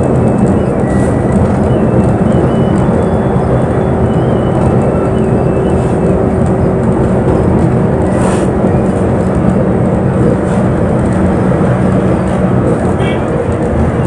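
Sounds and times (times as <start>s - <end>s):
bus engine drone: 0.0s - 14.0s
road rumble: 0.0s - 14.0s.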